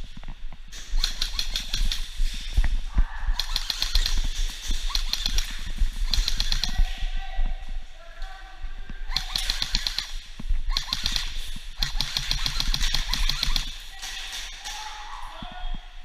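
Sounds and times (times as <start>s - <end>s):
airsoft guns firing: 0.7s - 2.7s, 3.3s - 7.2s, 9.1s - 15.4s.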